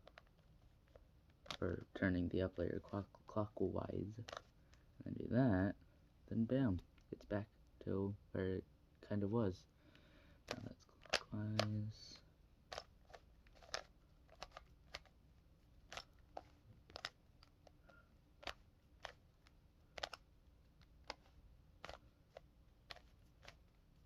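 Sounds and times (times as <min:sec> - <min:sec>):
puzzle cube clicking: 0:00.0 - 0:01.7, 0:04.2 - 0:04.5, 0:10.5 - 0:15.2, 0:15.8 - 0:24.0.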